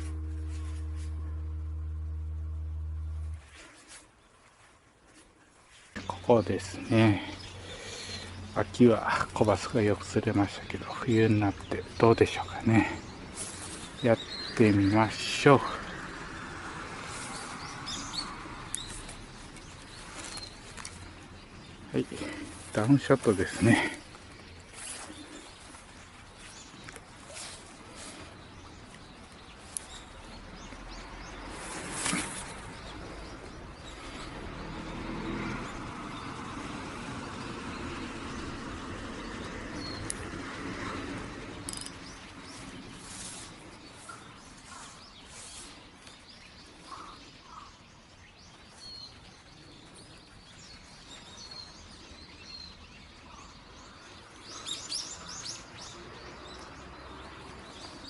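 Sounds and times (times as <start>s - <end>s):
small birds chirping: 0.0s - 58.0s
scrape: 43.0s - 43.5s.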